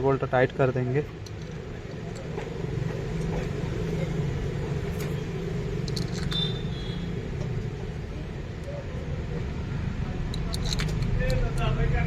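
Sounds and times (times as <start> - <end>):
car engine humming: 1.1 - 12.0.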